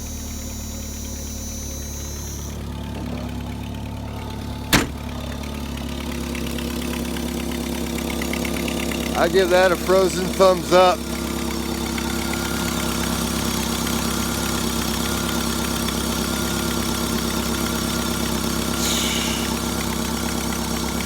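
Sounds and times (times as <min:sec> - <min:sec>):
light squeal: 0:00.0 - 0:02.8, 0:18.7 - 0:19.7
car engine idling: 0:00.0 - 0:21.0
brief hiss: 0:18.8 - 0:19.6.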